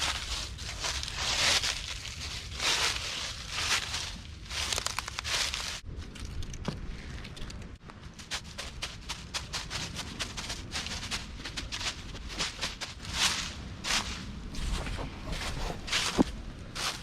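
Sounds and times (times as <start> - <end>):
small irregular crackles: 0.0 - 13.4
steady low rumble: 9.3 - 17.0.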